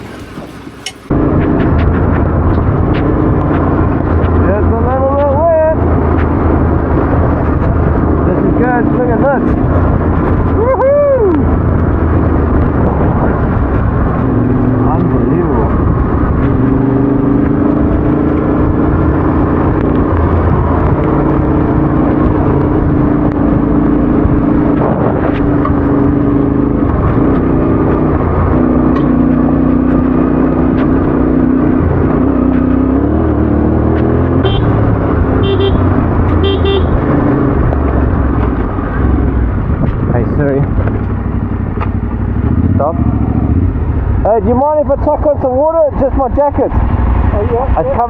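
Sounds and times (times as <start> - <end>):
motorcycle engine running: 0.0 - 48.0
wind and road noise: 0.0 - 48.0.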